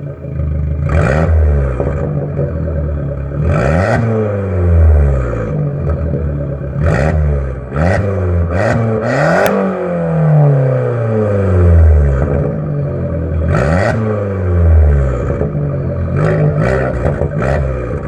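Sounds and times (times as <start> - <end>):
car engine revving: 0.0 - 18.0
exhaust crack: 0.0 - 18.0.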